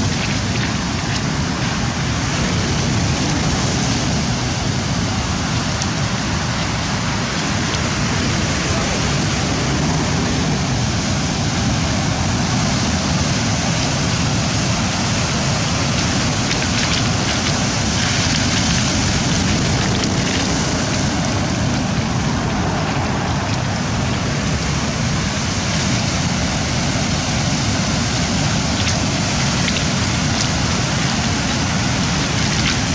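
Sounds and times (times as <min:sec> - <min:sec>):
surf breaking on shore: 0:00.0 - 0:32.9
wind on microphone: 0:00.0 - 0:32.9.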